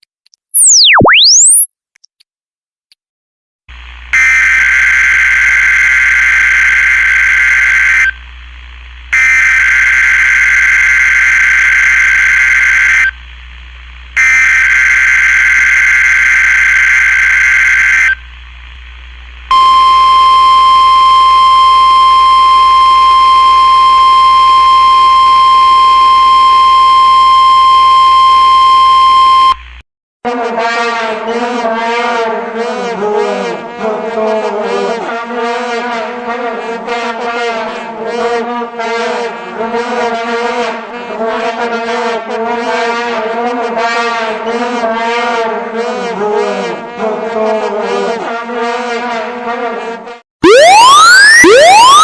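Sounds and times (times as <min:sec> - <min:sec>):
electronic buzzer: 0:00.3 - 0:02.0, 0:04.0 - 0:08.2, 0:09.1 - 0:13.2, 0:14.2 - 0:18.3, 0:19.5 - 0:29.8, 0:50.4 - 0:52.0
steady high beep tone: 0:00.4 - 0:02.0, 0:19.5 - 0:29.6.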